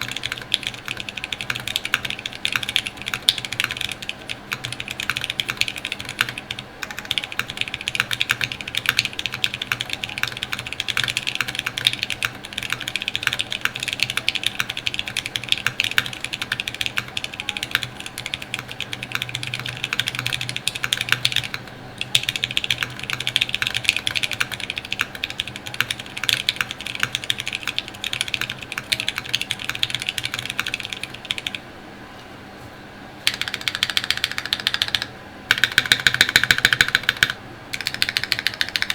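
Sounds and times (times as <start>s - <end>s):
fast typing on mechanical keyboard: 0.0s - 31.6s, 33.2s - 38.9s.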